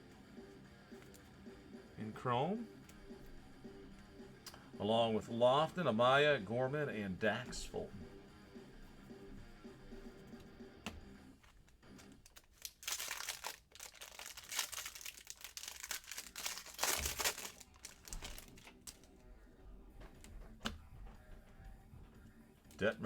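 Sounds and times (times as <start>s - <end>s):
plastic wrapper crinkling and tearing: 11.8s - 19.2s.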